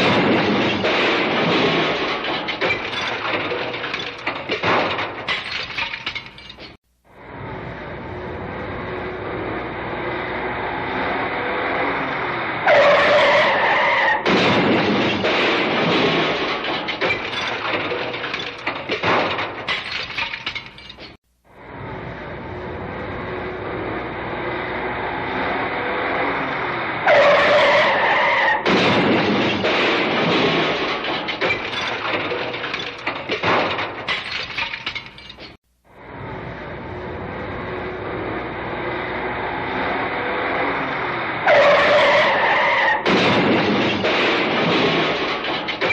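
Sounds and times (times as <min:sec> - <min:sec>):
car crash impact: 0:00.0 - 0:06.8, 0:12.7 - 0:21.2, 0:27.1 - 0:35.6, 0:41.4 - 0:45.9
scattering debris and glass: 0:00.0 - 0:06.8, 0:14.2 - 0:21.2, 0:28.6 - 0:35.6, 0:43.0 - 0:45.9
tyres screeching: 0:12.6 - 0:14.3, 0:27.0 - 0:28.7, 0:41.4 - 0:43.1.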